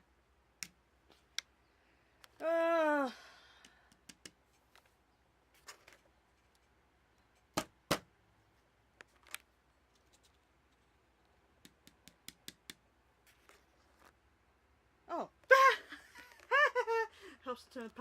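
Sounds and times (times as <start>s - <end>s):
small clicks and taps: 3.6s - 4.9s.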